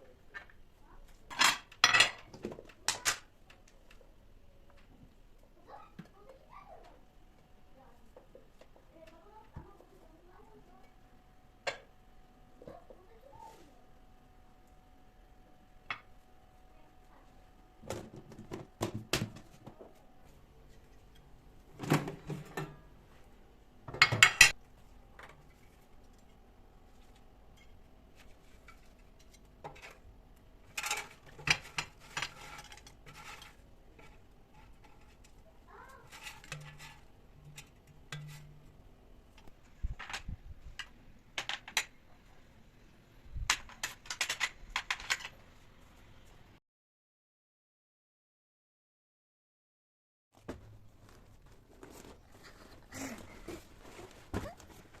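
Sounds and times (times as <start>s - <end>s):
dishes and cutlery clattering: 1.3s - 3.2s.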